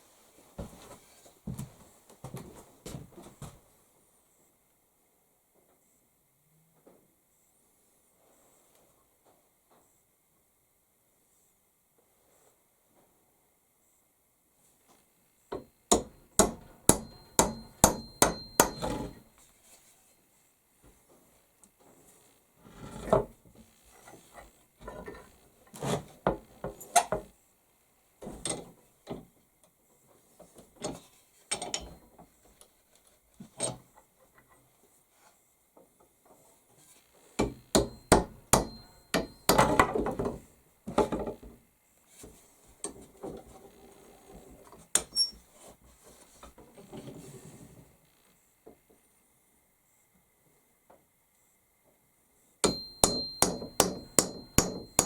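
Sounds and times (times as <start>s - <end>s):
hammer knocking on wood: 15.6s - 19.1s, 37.4s - 39.8s, 52.6s - 55.0s.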